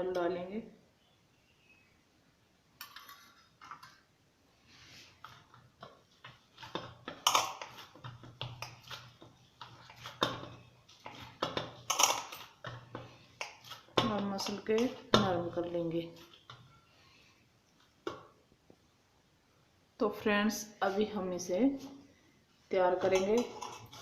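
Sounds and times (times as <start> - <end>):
hands kneading dough: 5.0 - 11.8.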